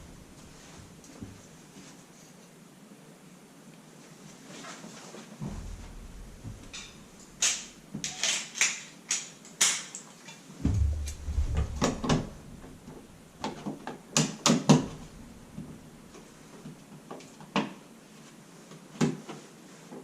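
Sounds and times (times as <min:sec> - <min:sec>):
dull bump: 0:05.4 - 0:08.0, 0:10.6 - 0:13.6, 0:14.7 - 0:16.4.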